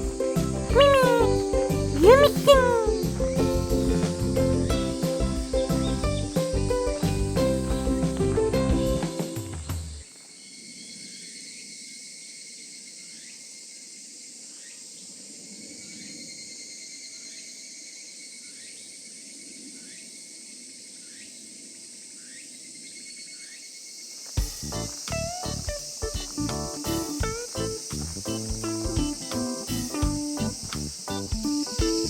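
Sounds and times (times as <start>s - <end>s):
cicadas droning: 0.0s - 32.0s
short rising insect call: 10.0s - 28.4s.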